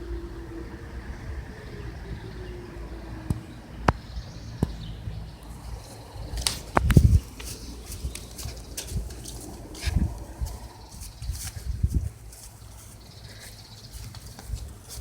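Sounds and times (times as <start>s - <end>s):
warning siren winding down: 0.0s - 3.8s.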